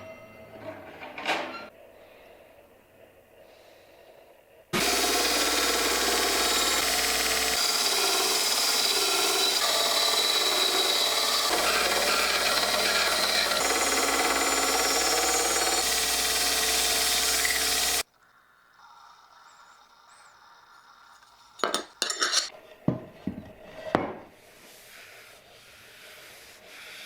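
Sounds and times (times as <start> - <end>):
power tool running under load: 4.8 - 18.1.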